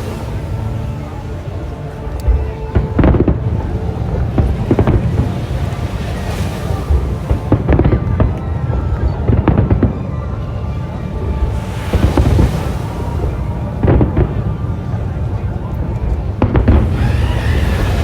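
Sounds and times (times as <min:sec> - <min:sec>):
low rumble: 0:00.0 - 0:18.0
fireworks bangs and crackles: 0:02.3 - 0:10.1, 0:11.2 - 0:15.2, 0:15.8 - 0:18.0.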